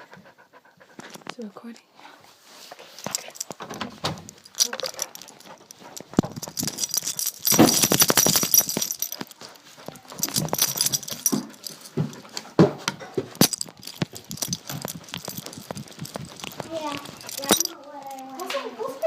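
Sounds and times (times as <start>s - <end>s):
dog tags jingling: 3.0s - 19.0s.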